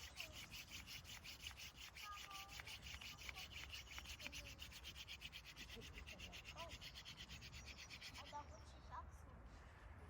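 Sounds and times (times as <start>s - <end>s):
hand drill scraping wood: 0.0s - 7.4s.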